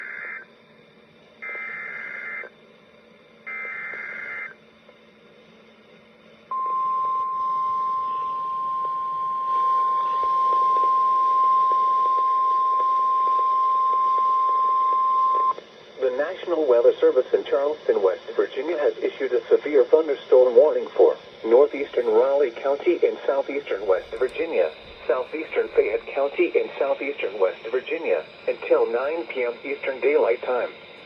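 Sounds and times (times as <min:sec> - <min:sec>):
steady warning alarm tone: 0:00.0 - 0:00.6, 0:01.4 - 0:02.6, 0:03.4 - 0:04.7, 0:06.5 - 0:15.6, 0:16.2 - 0:31.0
raspy data warble bursts: 0:01.4 - 0:02.5, 0:03.5 - 0:04.6, 0:17.6 - 0:31.0.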